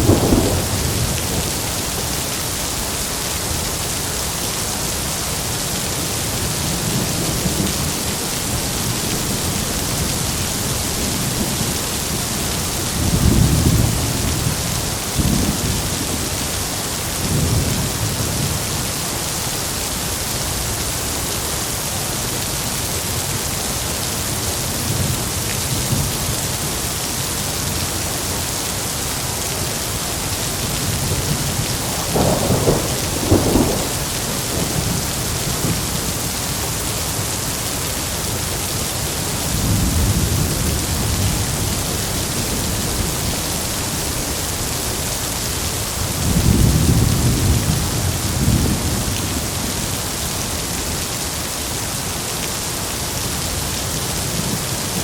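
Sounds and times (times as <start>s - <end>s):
thunder rumbling: 0.0s - 2.4s, 30.8s - 36.4s
heavy rain falling: 0.0s - 55.0s.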